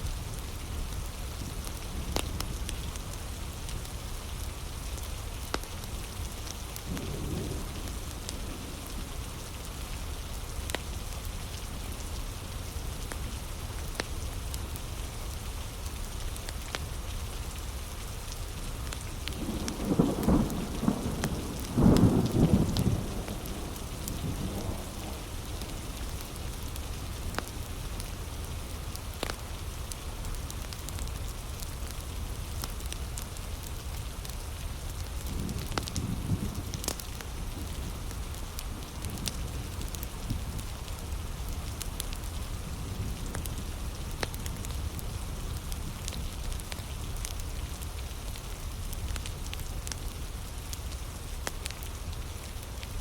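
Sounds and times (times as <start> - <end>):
heavy rain falling: 0.0 - 53.0
wood fire crackling: 0.2 - 53.0
thunder rumbling: 6.9 - 9.2, 19.4 - 28.4.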